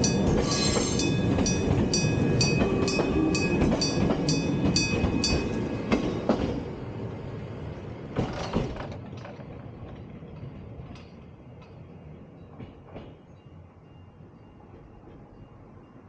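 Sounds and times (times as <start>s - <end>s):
level-crossing bell clanging: 0.0s - 6.3s, 11.2s - 16.0s
wheels clacking over rail joints: 0.0s - 6.8s, 8.0s - 11.9s
passing train rumbling: 0.0s - 16.0s.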